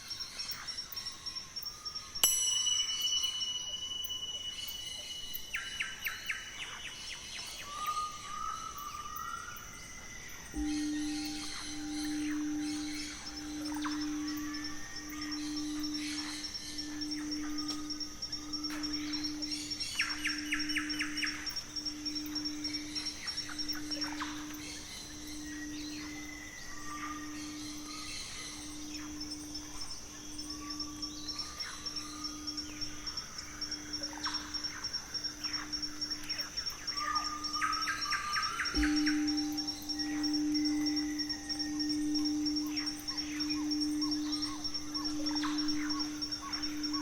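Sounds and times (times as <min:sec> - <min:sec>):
birds singing: 0:00.0 - 0:47.0
high insect buzz: 0:00.0 - 0:47.0
low pure hum: 0:10.4 - 0:47.0.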